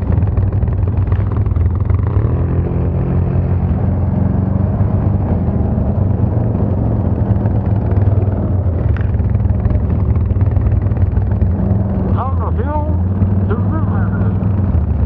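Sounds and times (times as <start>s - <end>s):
atv engine droning: 0.0s - 15.0s.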